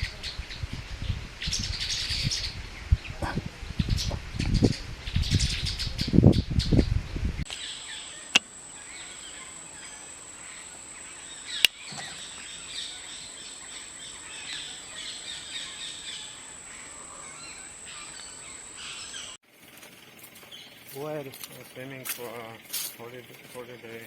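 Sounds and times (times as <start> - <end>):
birds chirping and calling: 0.0 - 24.0
steady high-pitched tone: 7.5 - 24.0.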